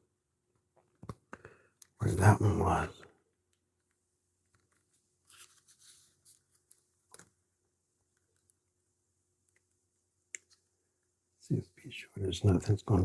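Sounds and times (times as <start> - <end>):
faint clicks and light scrapes: 3.5 - 7.4.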